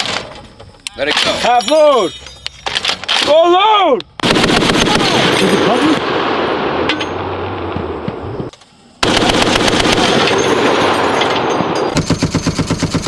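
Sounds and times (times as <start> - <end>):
machine gun firing bursts: 4.2 - 6.2, 9.0 - 13.0.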